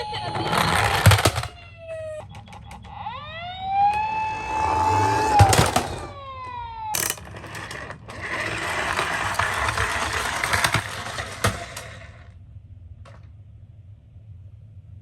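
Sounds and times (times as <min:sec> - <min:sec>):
toy siren wailing: 0:00.0 - 0:11.9
whirring noise with clicks: 0:00.0 - 0:12.3.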